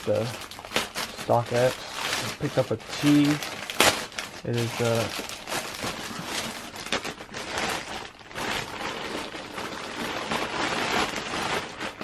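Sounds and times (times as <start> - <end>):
packaging crinkling and rustling: 0.0 - 12.0.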